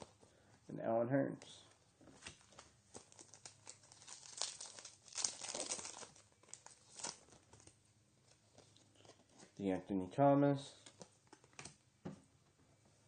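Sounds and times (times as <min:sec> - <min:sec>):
foil wrapper crinkling and tearing: 0:02.3 - 0:07.8.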